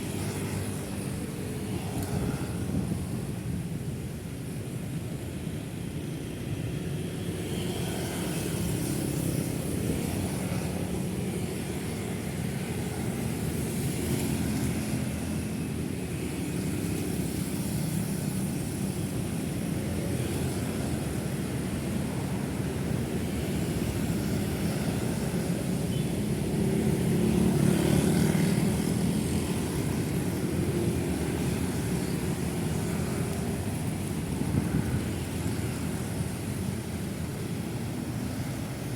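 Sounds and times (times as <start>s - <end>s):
road traffic drone: 0.0s - 38.9s.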